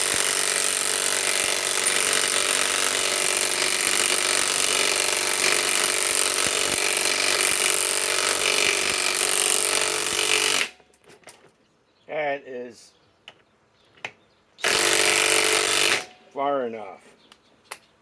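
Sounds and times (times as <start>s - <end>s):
impact wrench hammering: 0.0s - 10.8s, 14.6s - 16.2s.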